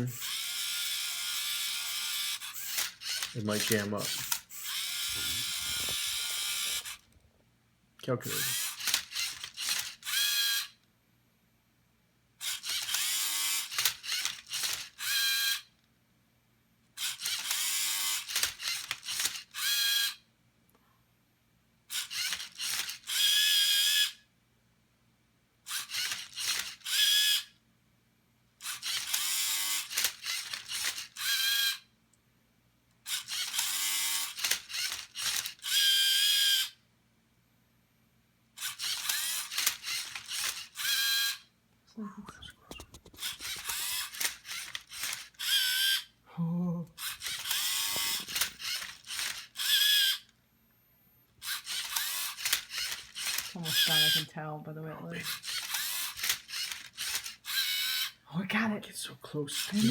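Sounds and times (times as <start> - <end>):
small motors whirring: 0.1 - 7.2, 8.3 - 10.8, 12.4 - 15.7, 17.0 - 20.2, 21.9 - 24.2, 25.7 - 27.5, 28.6 - 31.9, 33.0 - 36.8, 38.6 - 41.5, 42.3 - 46.1, 47.0 - 50.3, 51.3 - 54.3, 55.1 - 58.2, 59.6 - 59.9.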